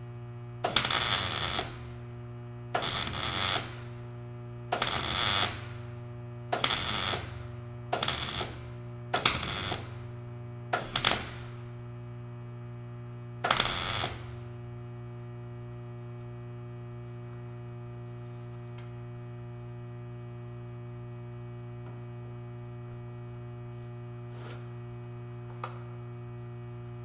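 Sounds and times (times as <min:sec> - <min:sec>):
welder electrical hum: 0:00.0 - 0:27.0
welding arc crackling: 0:00.7 - 0:02.0, 0:02.8 - 0:04.0, 0:04.8 - 0:05.9, 0:06.6 - 0:10.1, 0:10.8 - 0:11.6, 0:13.5 - 0:14.4.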